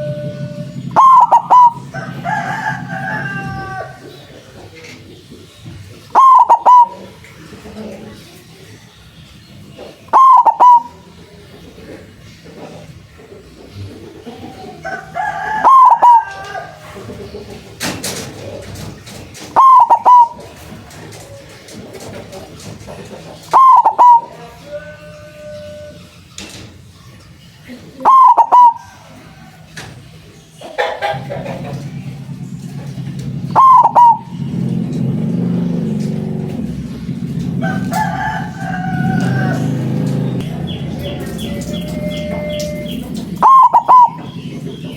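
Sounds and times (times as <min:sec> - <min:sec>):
rooster crowing: 0:00.0 - 0:04.3, 0:14.3 - 0:17.2, 0:23.6 - 0:26.1, 0:37.4 - 0:44.4
steady low drone: 0:00.0 - 0:04.5
dove cooing call: 0:00.0 - 0:44.9.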